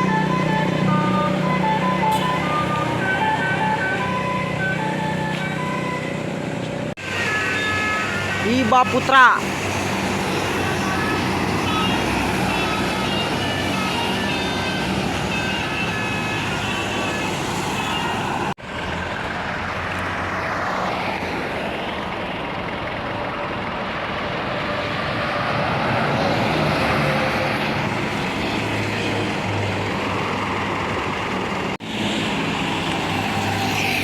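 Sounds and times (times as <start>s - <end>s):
multi-tone bus horn: 0.0s - 18.6s, 23.0s - 29.8s
buses passing: 0.0s - 34.0s.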